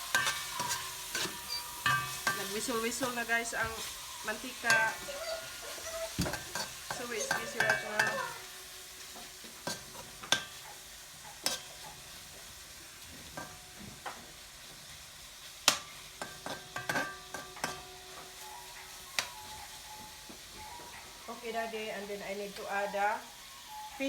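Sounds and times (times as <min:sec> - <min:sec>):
food sizzling in oil: 0:00.0 - 0:24.0
utensil knocking against pan: 0:06.2 - 0:08.4.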